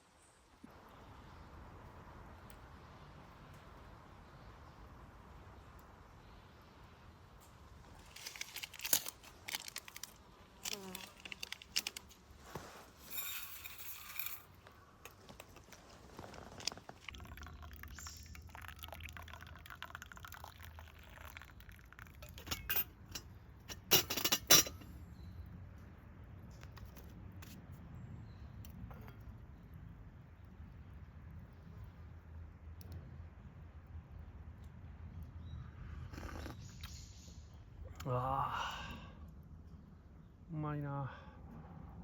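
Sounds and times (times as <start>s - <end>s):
cup clinking: 13.0s - 14.6s, 16.6s - 24.9s
liquid pouring: 15.4s - 23.1s.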